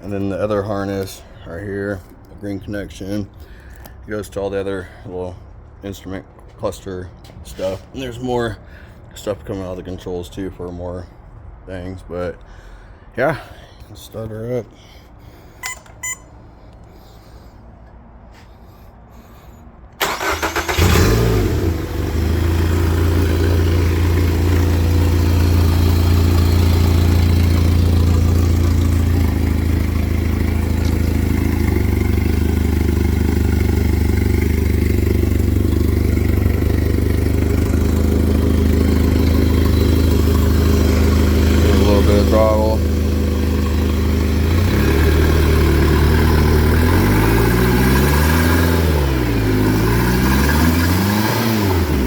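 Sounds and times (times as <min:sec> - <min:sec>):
electric starter cranking: 0:20.0 - 0:24.2
outboard motor idling: 0:20.1 - 0:47.7.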